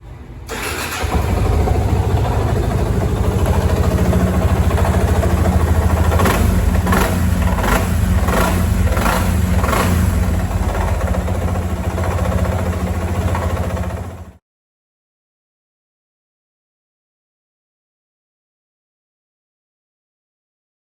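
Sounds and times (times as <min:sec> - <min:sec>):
motorcycle engine idling: 0:00.5 - 0:14.4.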